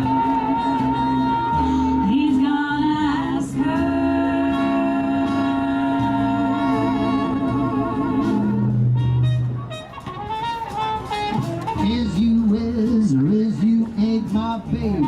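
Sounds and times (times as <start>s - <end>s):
swing music horn chords: 0.0s - 15.0s.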